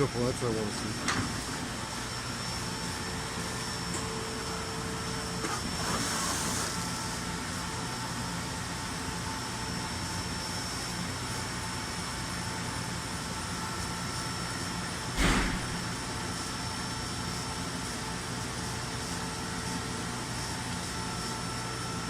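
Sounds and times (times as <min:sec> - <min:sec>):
machine hum: 0:15.1 - 0:17.1.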